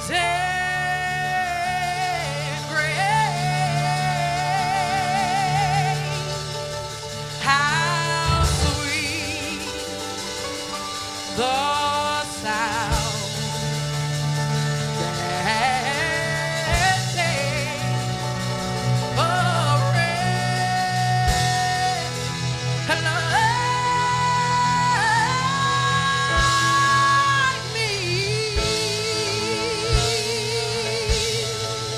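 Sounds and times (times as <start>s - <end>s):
bass notes: 0.0s - 31.9s
person singing gospel: 0.0s - 31.9s
sharp drum hits: 8.2s - 10.9s.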